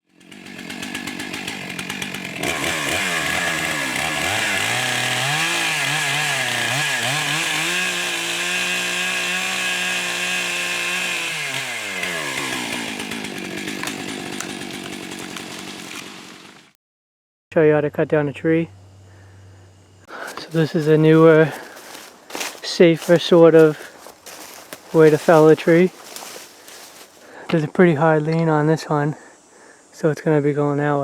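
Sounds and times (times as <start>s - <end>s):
chainsaw idling and revving: 0.0s - 16.8s, 20.1s - 27.8s.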